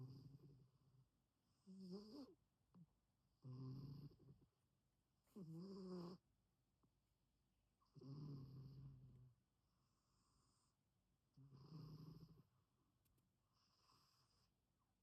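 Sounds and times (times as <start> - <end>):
pet snoring: 0.0 - 0.6, 1.6 - 2.4, 3.4 - 4.4, 5.3 - 6.2, 7.8 - 9.2, 11.4 - 12.5, 13.6 - 14.5.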